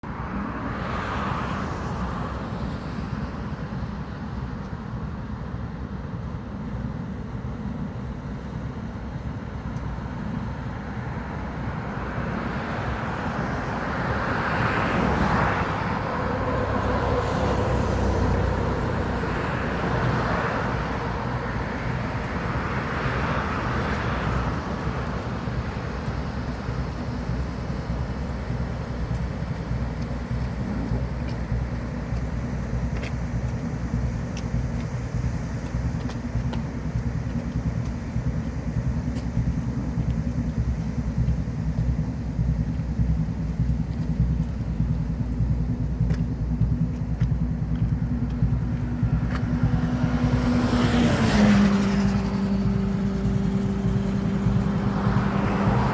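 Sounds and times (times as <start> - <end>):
road vehicle passing: 12.4 - 27.0, 28.7 - 55.9
steady low rumble: 15.8 - 55.9.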